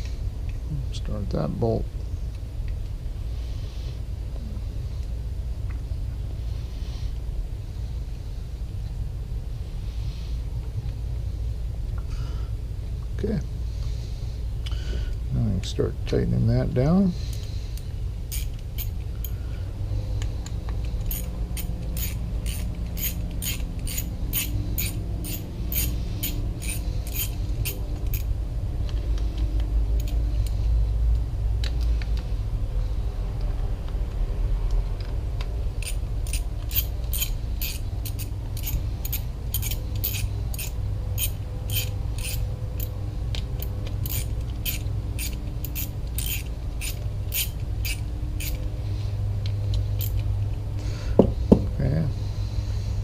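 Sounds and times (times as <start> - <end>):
steady low hum: 0.0 - 53.0
ratchet wrench clicking: 17.3 - 19.4, 20.8 - 28.3, 28.9 - 30.6, 35.8 - 48.7, 49.4 - 50.3.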